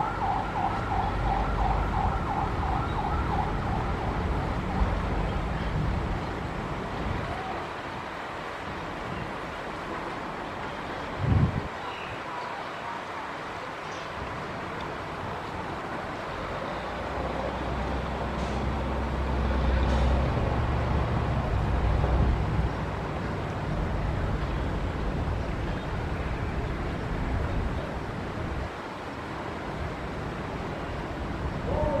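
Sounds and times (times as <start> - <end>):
heavy machinery diesel engine rumble: 16.3 - 28.7.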